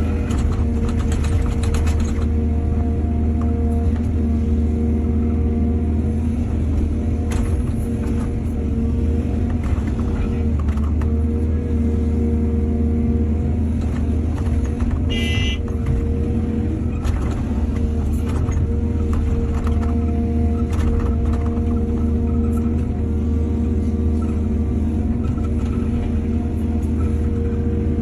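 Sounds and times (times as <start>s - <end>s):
excavator diesel engine running: 0.0s - 28.0s
brief high tone: 15.1s - 15.6s.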